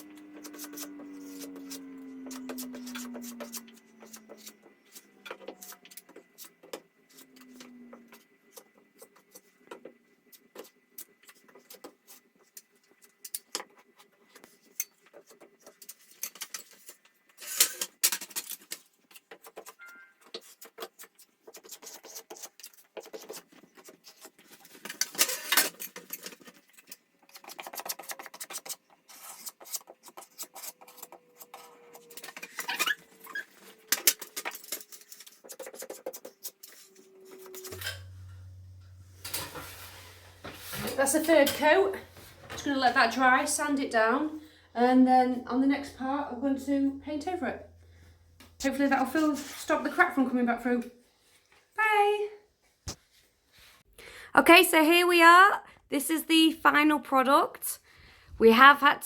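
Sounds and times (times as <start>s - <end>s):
filler knife scraping ceiling: 27.4s - 44.6s.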